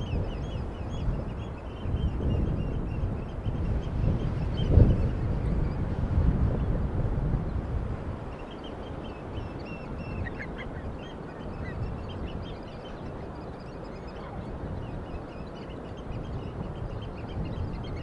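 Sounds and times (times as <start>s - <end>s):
many birds calling: 8.4s - 18.0s.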